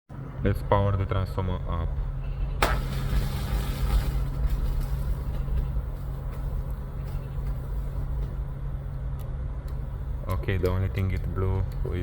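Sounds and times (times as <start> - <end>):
sharp electrical crack: 2.6 - 4.6.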